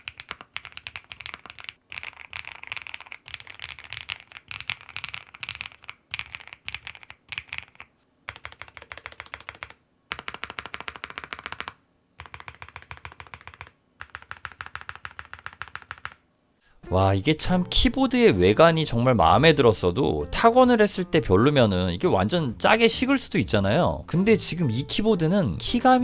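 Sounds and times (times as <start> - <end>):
mechanical keyboard typing: 0.0 - 16.2.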